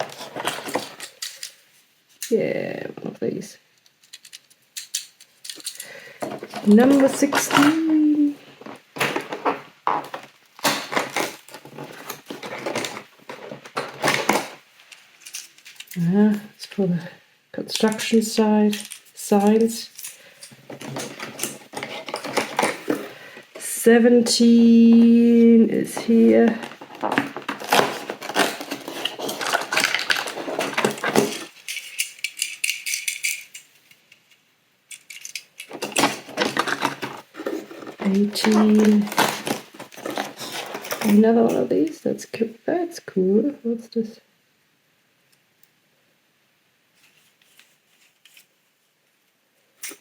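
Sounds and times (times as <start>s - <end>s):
packaging rustling: 0.0s - 1.7s, 4.1s - 16.1s, 17.8s - 23.7s, 24.4s - 33.6s, 34.9s - 41.6s
small toy rattling: 4.0s - 6.0s, 15.2s - 16.0s, 17.8s - 22.9s, 27.7s - 33.8s.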